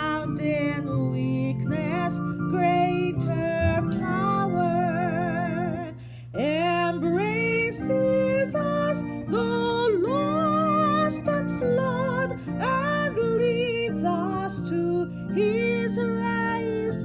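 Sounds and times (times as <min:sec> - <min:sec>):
person singing a hymn: 0:00.0 - 0:17.0
instrumental accompaniment: 0:01.3 - 0:05.9.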